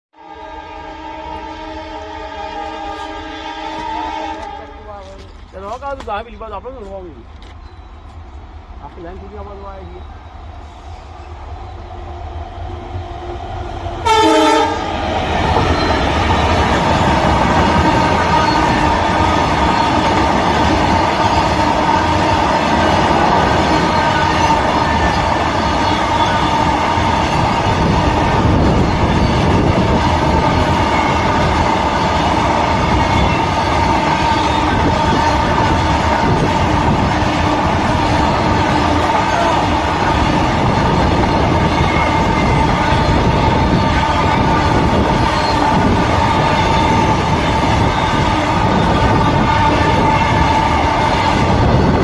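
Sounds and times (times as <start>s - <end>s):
train horn blast: 0.2s - 4.9s, 14.0s - 15.9s, 21.1s - 22.9s, 32.8s - 40.7s, 41.3s - 52.0s
diesel locomotive rumbling: 0.3s - 52.0s.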